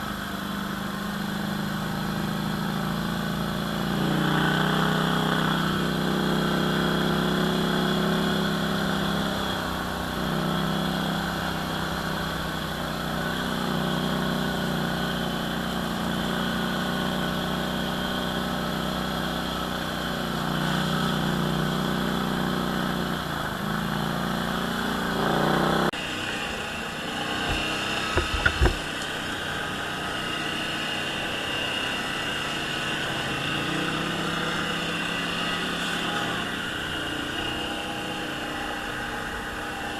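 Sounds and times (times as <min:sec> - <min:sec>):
atv engine revving: 0:00.0 - 0:39.9
sharp knocks: 0:27.5 - 0:29.0.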